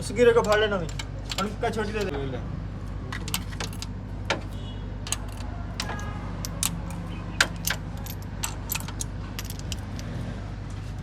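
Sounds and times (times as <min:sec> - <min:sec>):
metal tools clinking: 0:03.1 - 0:04.4, 0:05.0 - 0:10.2.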